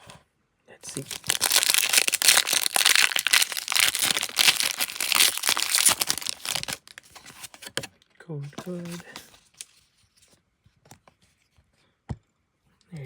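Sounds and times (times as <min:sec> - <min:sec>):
foil wrapper crinkling: 0:00.9 - 0:07.5.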